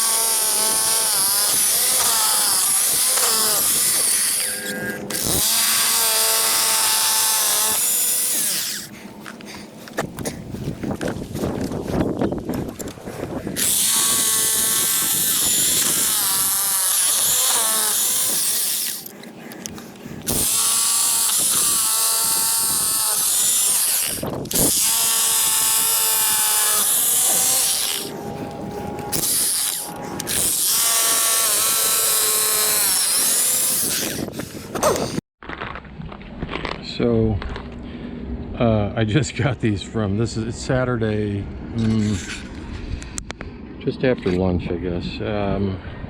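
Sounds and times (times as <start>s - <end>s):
power drill boring holes: 0.0s - 8.9s, 13.6s - 19.1s, 20.3s - 28.1s, 29.1s - 35.2s.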